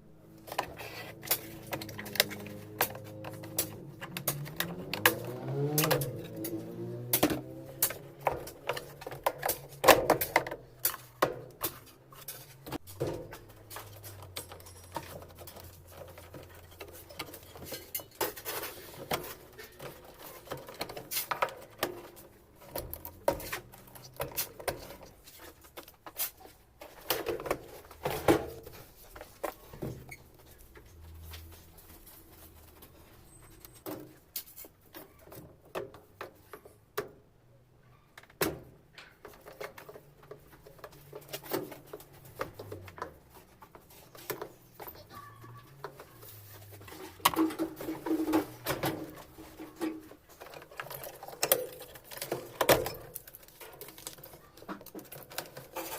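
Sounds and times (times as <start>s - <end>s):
tools and parts clicking and knocking: 0.3s - 37.4s, 38.1s - 55.9s.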